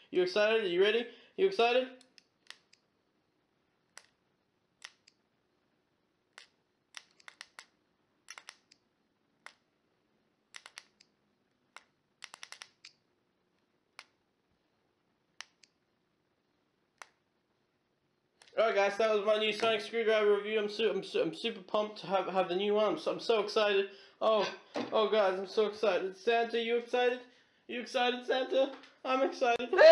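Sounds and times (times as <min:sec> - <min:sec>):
sharp plastic toy clicks: 0:04.8 - 0:05.2, 0:06.4 - 0:08.8, 0:10.5 - 0:11.1, 0:11.8 - 0:13.0.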